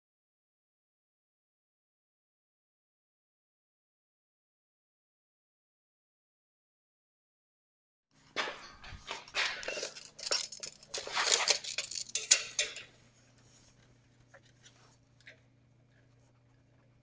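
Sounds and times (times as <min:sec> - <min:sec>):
metal objects clattering: 0:08.3 - 0:13.0.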